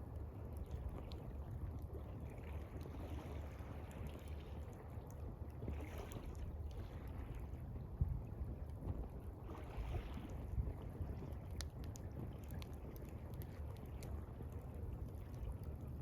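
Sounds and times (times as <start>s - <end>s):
water lapping gently: 0.0s - 16.0s
campfire crackling: 10.3s - 16.0s.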